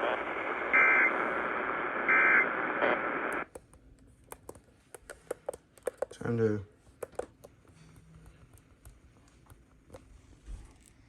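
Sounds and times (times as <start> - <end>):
radio static hiss: 0.0 - 3.5.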